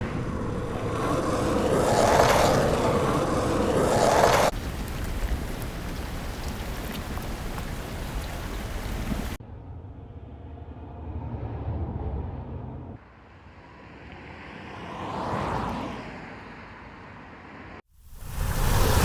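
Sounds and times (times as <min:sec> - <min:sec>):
rushing noise: 0:00.0 - 0:04.6, 0:18.0 - 0:19.0
rumbling ambience: 0:00.0 - 0:05.6, 0:09.2 - 0:13.9.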